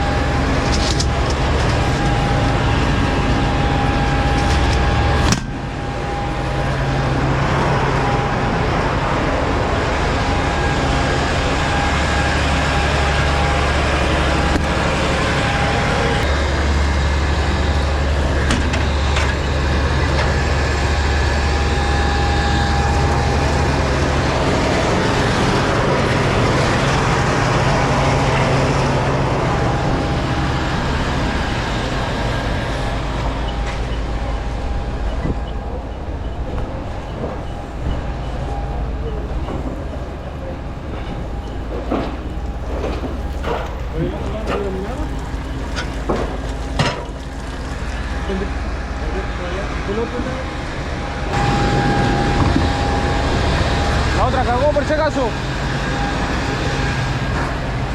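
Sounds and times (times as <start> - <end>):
diesel engine droning: 0.0 - 57.9
faint high whine: 48.3 - 57.9.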